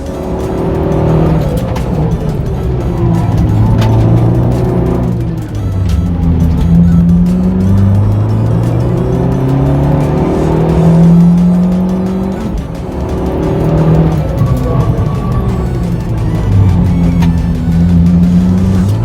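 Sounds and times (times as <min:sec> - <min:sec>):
background music: 0:00.0 - 0:19.0
car engine accelerating hard: 0:00.0 - 0:19.0.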